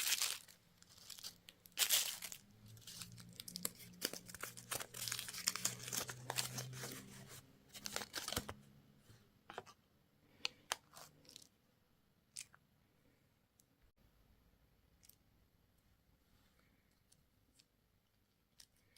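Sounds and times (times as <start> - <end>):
candy wrapper tearing and crinkling: 0.0 - 7.0, 7.7 - 8.5.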